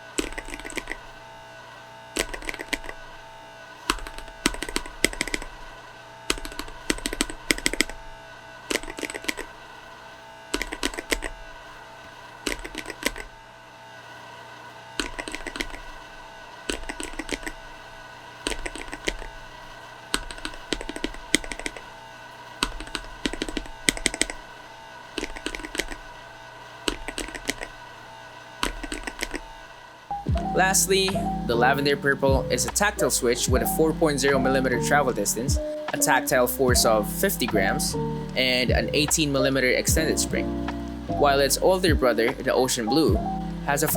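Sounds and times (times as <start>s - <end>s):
mechanical keyboard typing: 0.0s - 1.2s, 2.2s - 3.0s, 3.9s - 5.6s, 6.3s - 8.0s, 8.7s - 9.6s, 10.5s - 11.4s, 12.4s - 13.3s, 15.0s - 16.0s, 16.7s - 17.6s, 18.5s - 19.4s, 20.2s - 21.9s, 22.6s - 24.5s, 25.2s - 26.1s, 26.9s - 27.8s, 28.6s - 29.5s.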